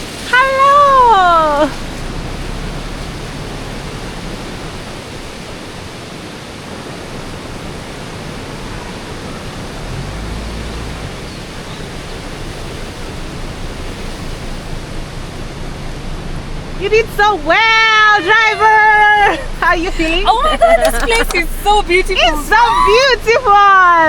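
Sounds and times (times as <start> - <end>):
water rushing over rapids: 0.0 - 24.0
low rumble: 6.9 - 23.8.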